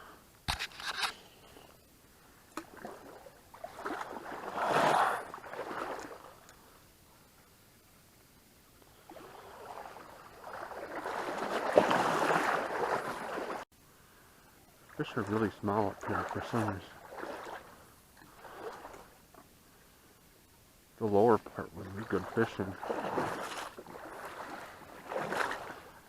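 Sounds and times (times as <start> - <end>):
creek water rushing: 9.1 - 13.6, 14.9 - 19.1, 21.4 - 26.0.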